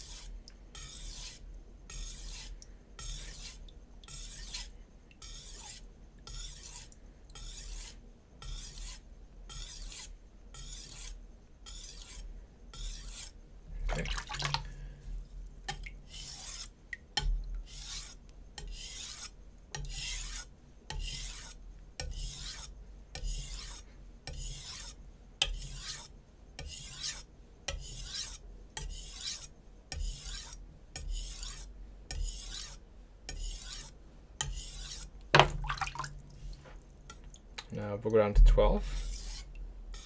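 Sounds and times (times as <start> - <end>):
knife scraping on whetstone: 0.0 - 13.4, 15.7 - 37.2, 38.8 - 40.0
sharp knock: 35.4 - 35.8.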